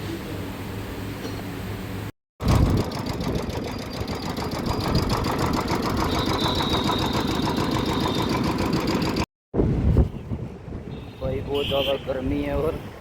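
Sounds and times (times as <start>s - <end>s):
motorcycle engine running: 2.4s - 9.3s.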